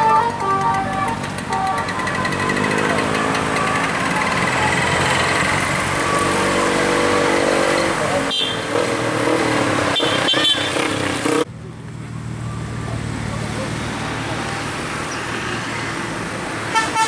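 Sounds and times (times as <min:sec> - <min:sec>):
musical multi-tone horn: 0:00.0 - 0:07.7, 0:16.7 - 0:17.0
vehicle engine running: 0:00.0 - 0:08.3.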